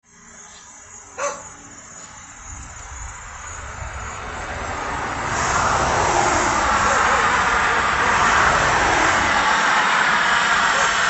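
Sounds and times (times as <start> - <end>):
dog barking: 1.2 - 1.6, 6.8 - 7.4, 10.7 - 11.0
rushing noise with low rumble: 2.1 - 11.0.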